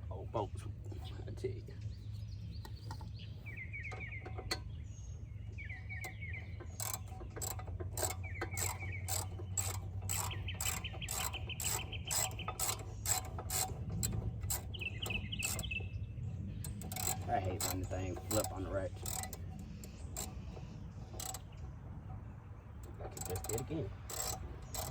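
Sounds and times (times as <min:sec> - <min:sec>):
ratchet wrench clicking: 0:06.0 - 0:15.9, 0:16.6 - 0:21.8, 0:22.8 - 0:24.9.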